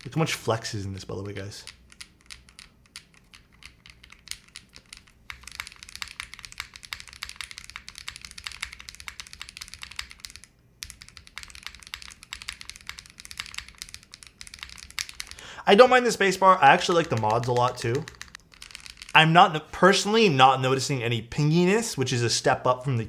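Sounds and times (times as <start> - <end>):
typing on mechanical keyboard: 1.2 - 15.4, 16.0 - 19.3.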